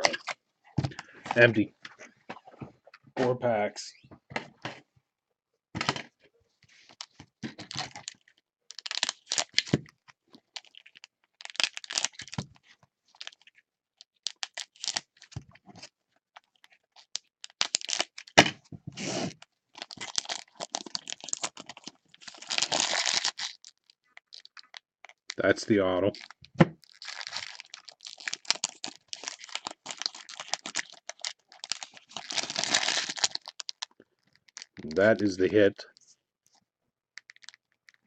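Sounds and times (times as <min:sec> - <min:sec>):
plastic wrappers tearing and crinkling: 0:06.9 - 0:09.8, 0:10.4 - 0:13.5, 0:14.2 - 0:18.4, 0:19.8 - 0:25.4, 0:26.1 - 0:35.3, 0:37.2 - 0:38.0.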